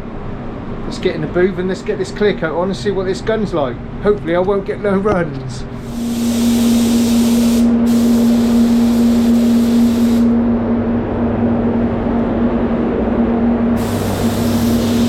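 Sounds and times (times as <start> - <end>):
spray booth humming: 5.6 - 11.8, 12.7 - 15.0
compressed air spray gun hissing: 5.8 - 10.4, 13.8 - 15.0.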